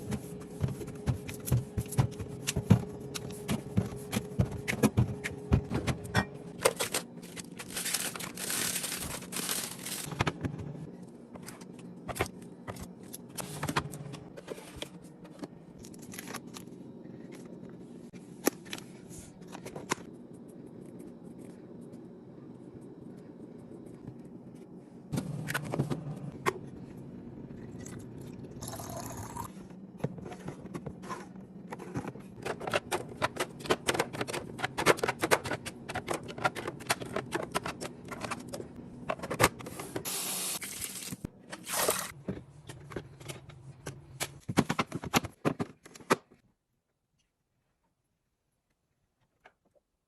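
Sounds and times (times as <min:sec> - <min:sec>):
kitchen items clicking and knocking: 0:31.7 - 0:40.1.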